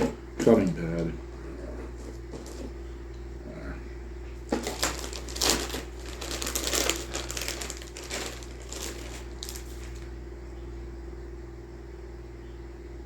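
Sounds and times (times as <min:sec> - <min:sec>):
steady low hum: 0:00.0 - 0:13.0
plastic bag crinkling: 0:04.5 - 0:10.2.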